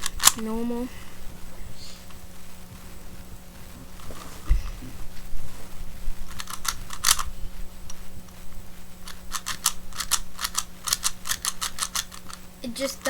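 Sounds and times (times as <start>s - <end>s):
puzzle cube layers clacking: 6.3s - 7.3s, 9.0s - 12.4s.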